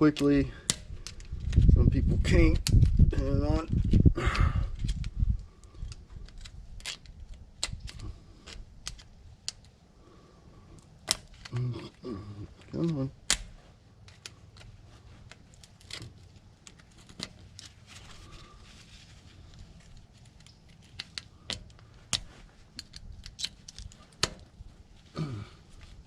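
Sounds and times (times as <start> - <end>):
metal picks clicking and scraping: 4.7 - 9.8, 10.8 - 18.3, 19.5 - 24.6.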